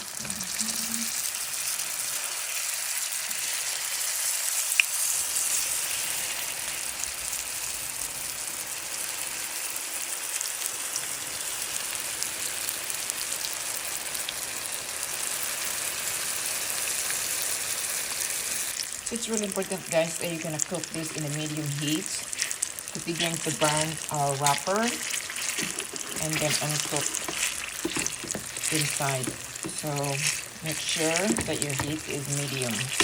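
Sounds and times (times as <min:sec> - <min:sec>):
food sizzling in hot oil: 0:00.0 - 0:33.0.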